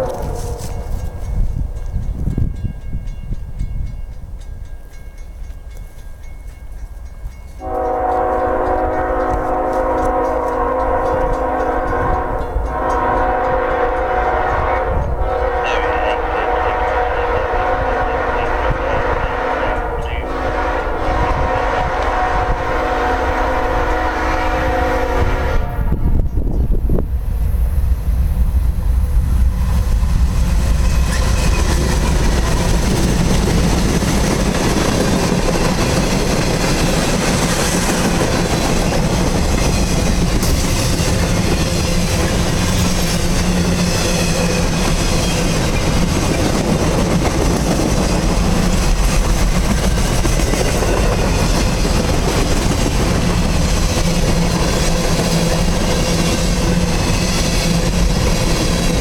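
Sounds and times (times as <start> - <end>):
freight train wheels rumbling: 0.0 - 59.0
wheels clacking over rail joints: 30.9 - 59.0.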